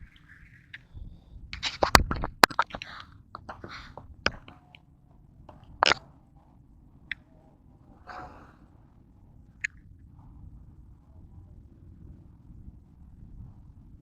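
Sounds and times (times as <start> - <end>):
sharp clicks: 1.6 - 4.8, 5.5 - 6.0.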